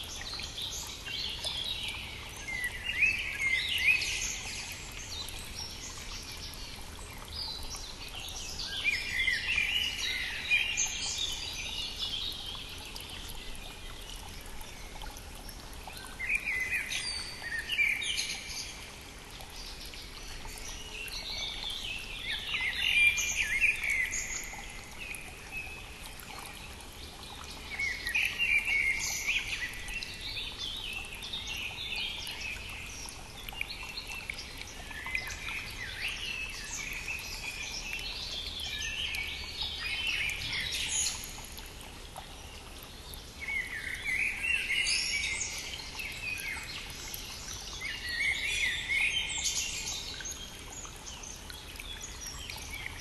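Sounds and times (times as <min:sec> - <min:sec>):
songbirds chirping: 0:00.0 - 0:53.0.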